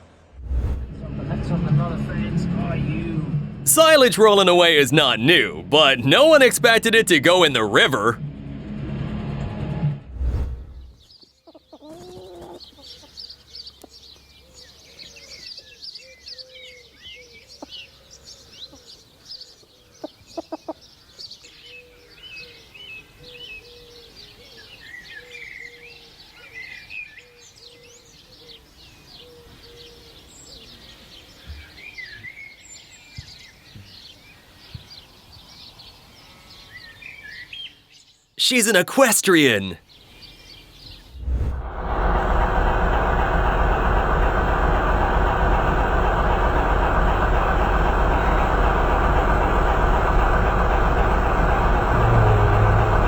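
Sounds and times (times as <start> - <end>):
low pulsing note: 41.2 - 53.0.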